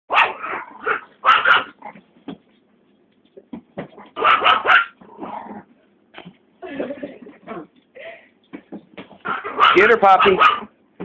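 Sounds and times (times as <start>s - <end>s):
dog barking: 0.1s - 1.8s, 4.2s - 5.0s, 9.2s - 10.7s.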